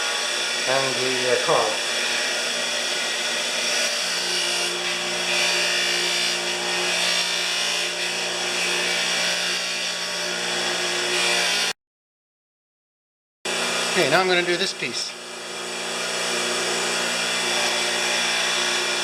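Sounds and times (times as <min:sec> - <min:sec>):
wire wheel motor hum: 0:13.5 - 0:19.0.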